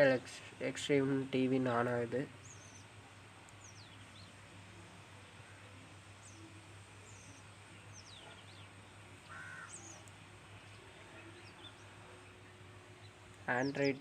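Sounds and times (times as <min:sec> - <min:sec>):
small birds chirping: 0:00.0 - 0:14.0
steady low hum: 0:00.0 - 0:14.0
bird cawing: 0:09.2 - 0:10.0.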